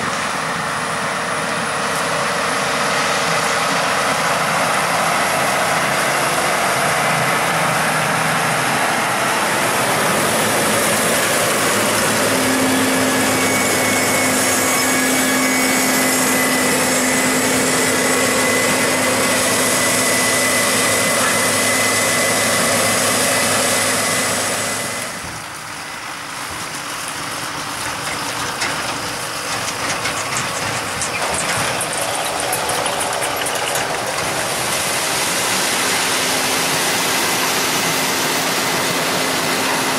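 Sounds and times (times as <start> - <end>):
steady whine: 0.0 - 26.8
heavy machinery engine running: 0.0 - 39.9.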